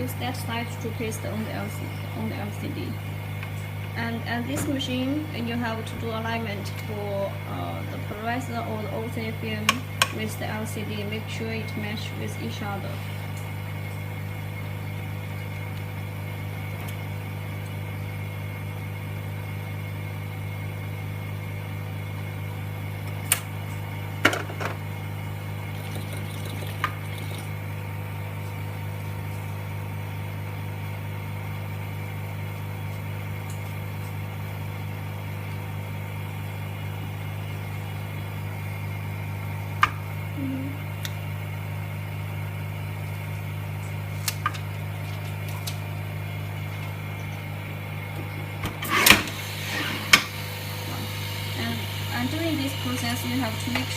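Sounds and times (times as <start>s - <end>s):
vacuum pump humming: 0.0s - 53.9s.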